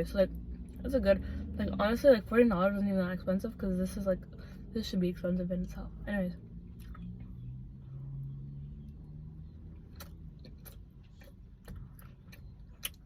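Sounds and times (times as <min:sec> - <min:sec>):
low steady hum: 0:00.0 - 0:13.0
person chewing a cookie: 0:06.7 - 0:07.4, 0:09.6 - 0:13.0
mouth clicks and crunches: 0:09.7 - 0:13.0.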